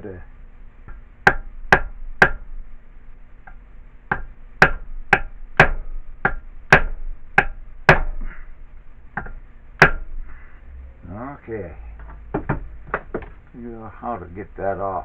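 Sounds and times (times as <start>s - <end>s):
hammer striking metal: 0.9s - 2.6s, 3.5s - 8.4s, 9.2s - 10.2s.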